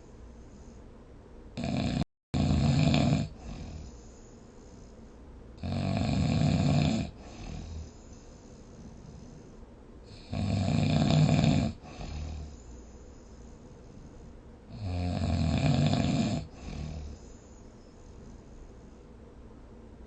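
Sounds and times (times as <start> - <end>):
soft breath: 0.0 - 1.3, 3.3 - 5.6, 7.1 - 10.3, 11.8 - 14.7, 16.4 - 19.5
person snoring: 1.6 - 4.1, 5.6 - 9.5, 10.1 - 12.8, 14.7 - 17.5.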